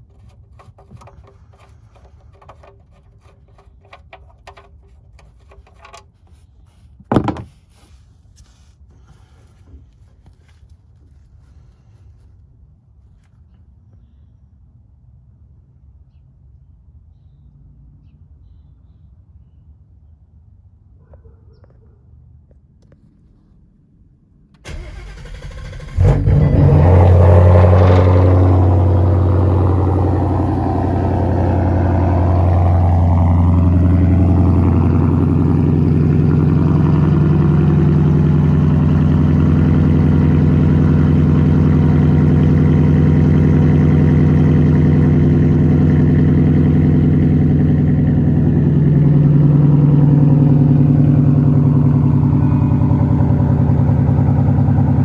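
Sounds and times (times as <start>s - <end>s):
car engine idling: 24.6s - 55.0s.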